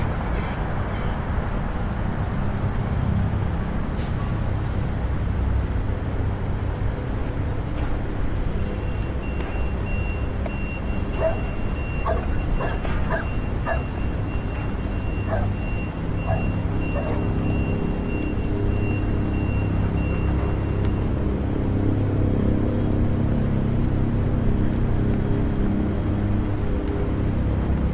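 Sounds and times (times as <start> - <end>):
traffic rumble: 0.0 - 27.9
thin high tone: 10.9 - 18.0
dog barking: 11.0 - 17.7.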